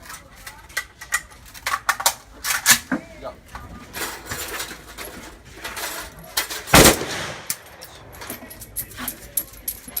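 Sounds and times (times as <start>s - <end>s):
rifle shot: 6.7s - 7.8s
faint distant gunshots: 6.8s - 7.5s.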